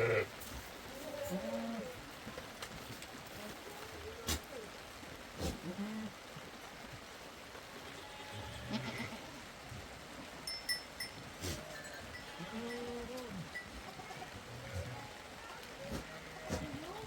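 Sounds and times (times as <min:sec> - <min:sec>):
goats bleating: 0:00.0 - 0:00.4, 0:07.8 - 0:09.3, 0:11.4 - 0:17.0.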